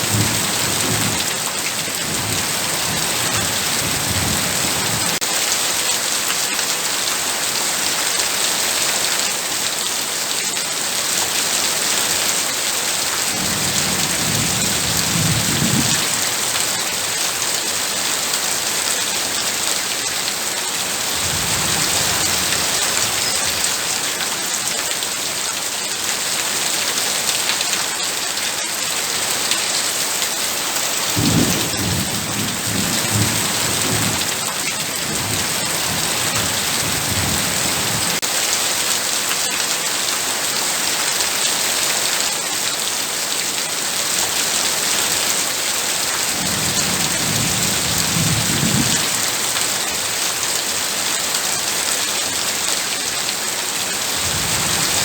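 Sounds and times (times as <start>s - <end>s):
heavy rain: 0.0s - 55.0s
low thunder rumbling: 13.4s - 16.3s, 31.2s - 38.2s.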